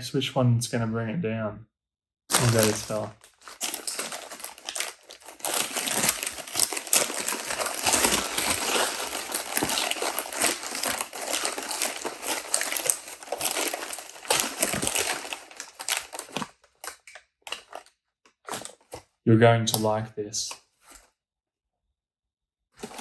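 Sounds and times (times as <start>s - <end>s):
packing wrap crinkling: 2.3s - 19.1s, 22.8s - 23.0s.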